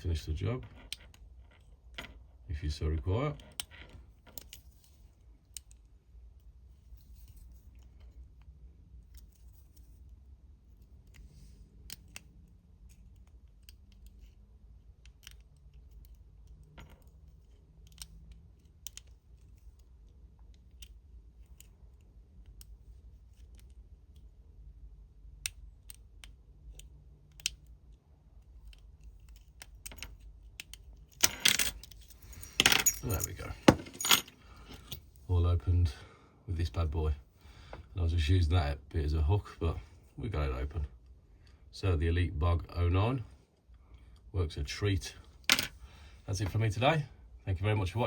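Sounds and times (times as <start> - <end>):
padlock metallic rattle: 28.5 - 35.1
lock pick scraping in keyway: 29.2 - 35.0.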